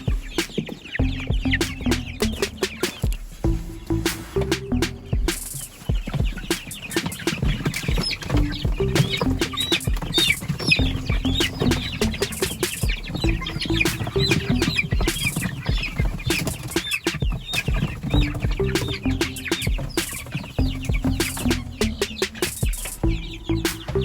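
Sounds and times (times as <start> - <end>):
background music: 0.0 - 24.0
chicks peeping: 0.0 - 24.0
scattered knocks: 5.2 - 24.0.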